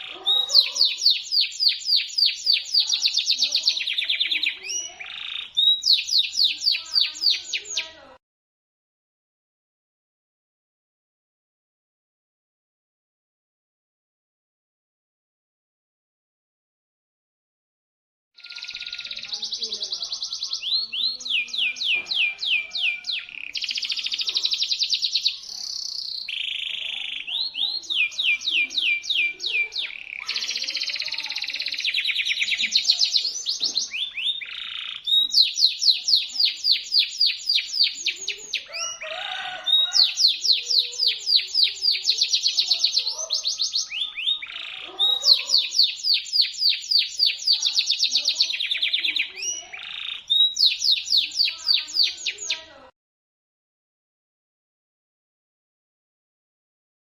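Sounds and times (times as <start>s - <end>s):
canary singing trills: 0.0s - 8.2s, 18.4s - 52.9s.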